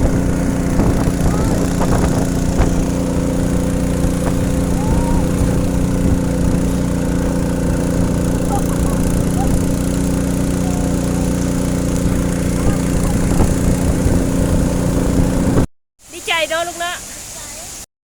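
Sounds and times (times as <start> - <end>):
boat engine humming: 0.0 - 17.1.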